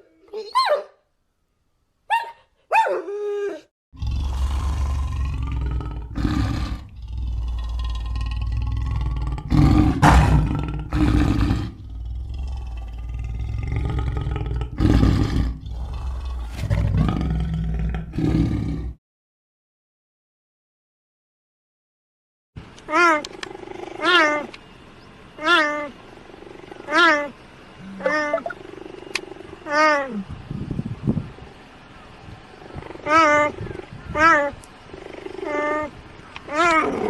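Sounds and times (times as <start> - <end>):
deep rough animal roar: 3.9 - 19.0, 27.8 - 30.2.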